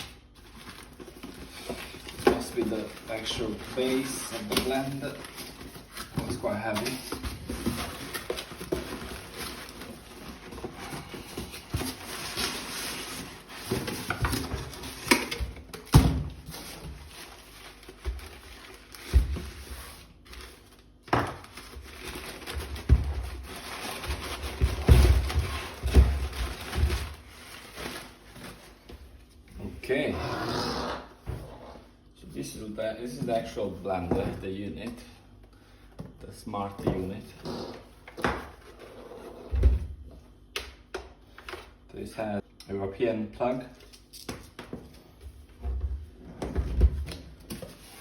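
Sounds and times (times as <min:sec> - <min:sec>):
packaging rustling and scraping: 0:00.0 - 0:30.0, 0:46.4 - 0:48.0.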